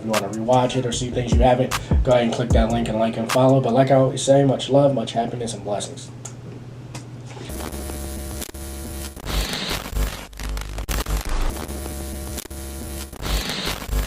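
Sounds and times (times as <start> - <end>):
heavy distorted bass music: 0.9 - 3.0, 7.5 - 14.0.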